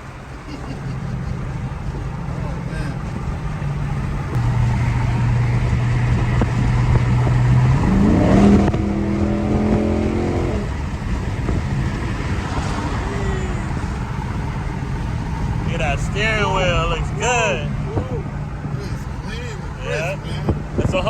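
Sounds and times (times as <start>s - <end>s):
car engine idling and revving: 0.0s - 21.0s.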